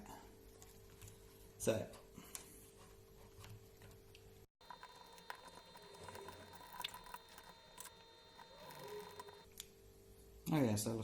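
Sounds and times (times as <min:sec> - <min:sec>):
small clicks: 0:04.6 - 0:09.5.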